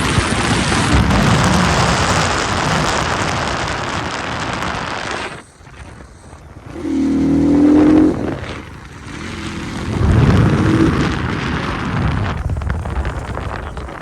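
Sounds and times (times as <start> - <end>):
deep rumble: 0.0 - 14.0
vehicle engine running loudly: 6.0 - 14.0
pitched sliding tone: 6.6 - 11.0.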